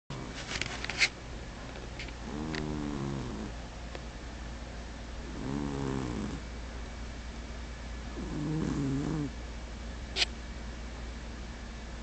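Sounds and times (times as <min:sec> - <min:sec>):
cat snoring: 0:02.2 - 0:03.5, 0:05.2 - 0:06.4, 0:08.1 - 0:09.4.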